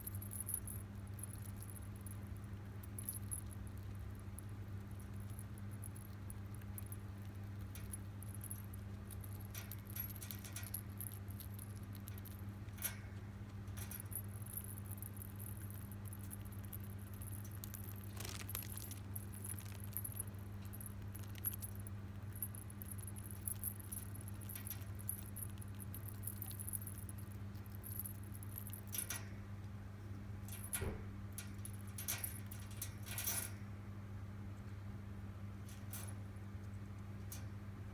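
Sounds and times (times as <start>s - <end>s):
degu scratching and clicking: 0.0s - 29.3s
low electrical hum: 0.0s - 37.9s.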